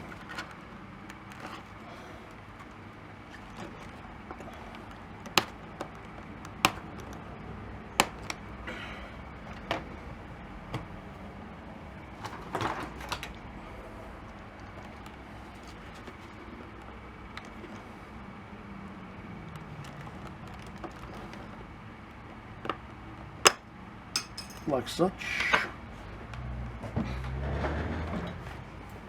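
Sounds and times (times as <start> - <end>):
plastic clicks and taps: 3.6 - 7.3.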